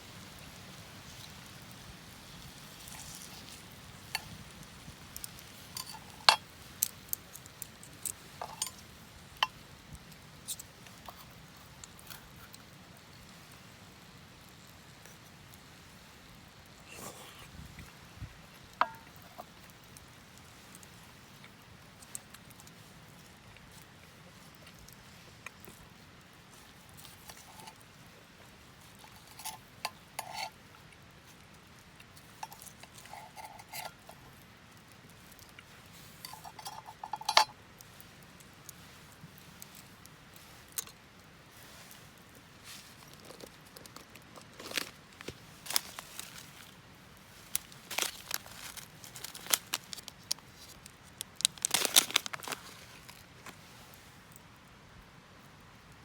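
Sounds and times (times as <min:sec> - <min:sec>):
crinkling and rustling: 0:35.1 - 0:54.2.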